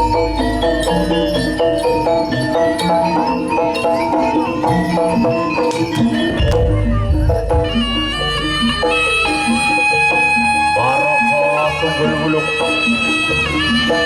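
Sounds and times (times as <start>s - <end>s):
metallophones ringing: 0.0s - 10.8s
drum strokes: 3.8s - 9.8s.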